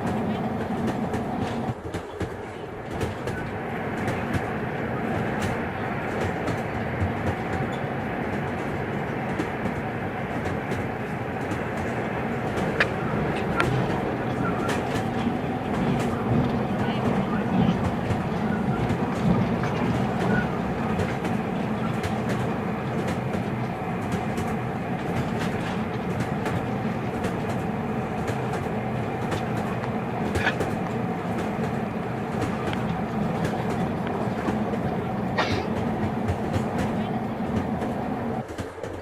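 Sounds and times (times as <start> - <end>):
train carriage rolling rumble: 0.0 - 39.0.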